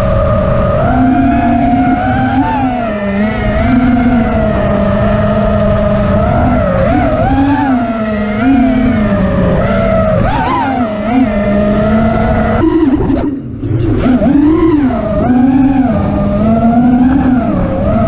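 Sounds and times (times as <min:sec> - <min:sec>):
quadcopter motors buzzing whine: 0:00.0 - 0:18.0.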